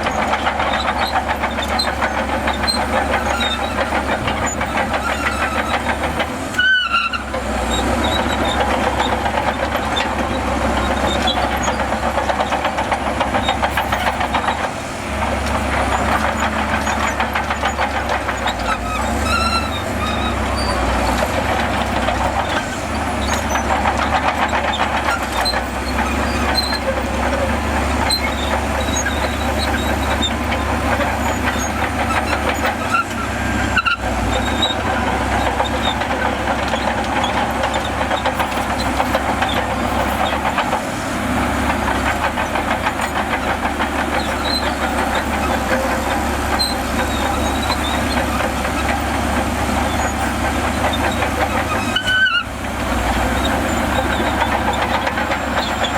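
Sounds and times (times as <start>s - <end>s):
bulldozer diesel engine running: 0.0s - 55.9s
steel tracks clattering: 0.0s - 55.9s.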